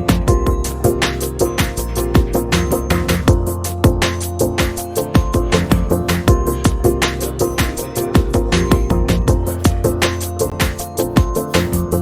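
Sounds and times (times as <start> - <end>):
sustained synth tones: 0.0 - 11.8
drum and bass music: 0.0 - 12.0
kick drum: 0.1 - 0.9, 3.3 - 7.0, 7.6 - 11.4.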